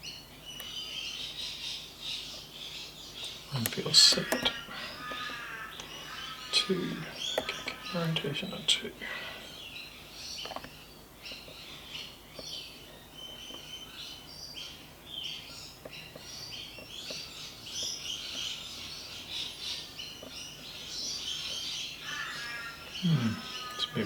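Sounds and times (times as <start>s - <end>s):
small birds chirping: 0.0s - 24.0s
lock pick ticking: 3.6s - 4.6s.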